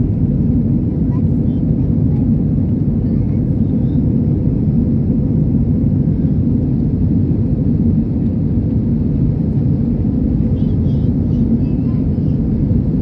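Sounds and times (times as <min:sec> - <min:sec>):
airliner low rumble: 0:00.0 - 0:13.0.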